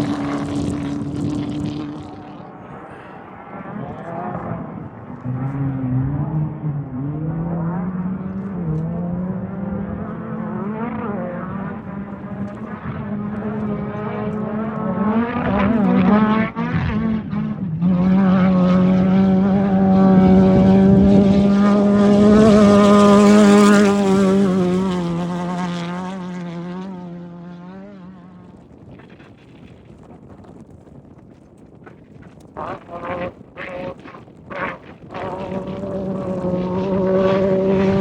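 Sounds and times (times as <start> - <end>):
race vehicle engine at high revs: 0.0 - 28.7, 32.6 - 38.0.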